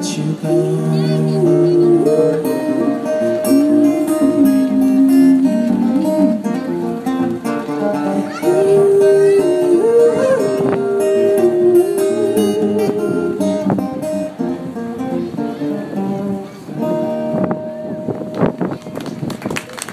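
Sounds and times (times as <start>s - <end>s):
acoustic guitar strumming: 0.0s - 18.7s.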